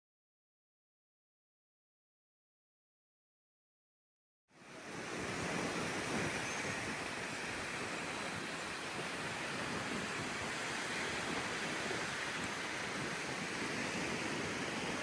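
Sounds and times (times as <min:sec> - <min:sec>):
steady rushing outdoor noise: 0:04.5 - 0:15.0.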